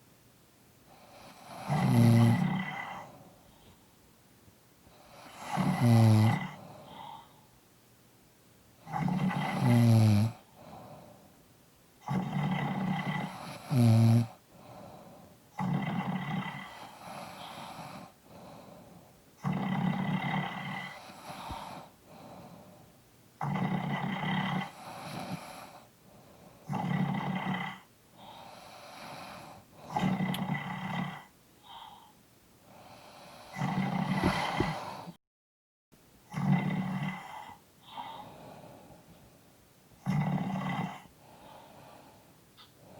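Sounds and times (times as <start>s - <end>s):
quiet breathing: 0.8s - 4.1s, 4.8s - 7.7s, 8.7s - 11.5s, 12.4s - 15.6s, 16.2s - 19.5s, 20.2s - 23.0s, 24.4s - 26.8s, 27.8s - 30.4s, 31.1s - 35.2s, 36.9s - 40.3s, 40.9s - 42.9s
loud rasping snores: 1.2s - 3.2s, 5.1s - 7.1s, 8.8s - 10.9s, 12.0s - 14.4s, 15.6s - 18.6s, 19.4s - 22.6s, 23.4s - 25.8s, 26.6s - 31.3s, 32.8s - 35.2s, 36.3s - 38.6s, 40.0s - 41.9s
short pitched snort: 33.5s - 35.2s.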